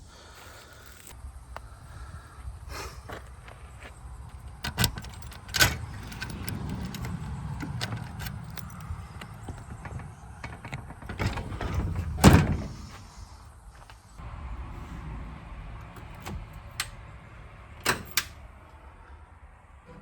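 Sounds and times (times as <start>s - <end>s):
sharp knocks and clatters: 4.7s - 12.6s.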